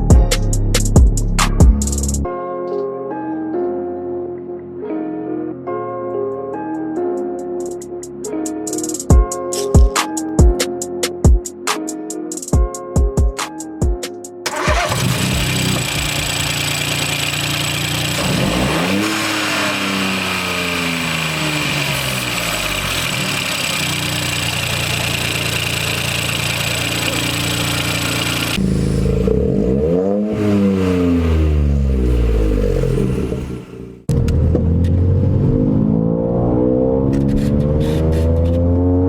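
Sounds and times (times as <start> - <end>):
car engine revving: 14.5 - 39.0.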